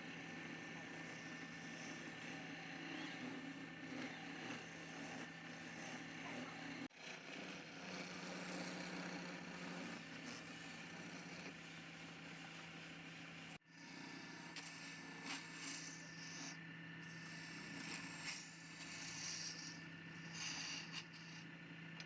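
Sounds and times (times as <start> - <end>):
wood lathe motor humming: 0.0 - 22.0.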